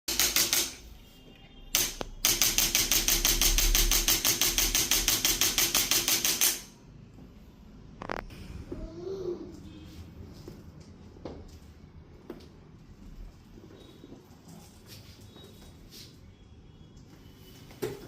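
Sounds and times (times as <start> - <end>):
rapid even tapping: 1.8 - 6.7.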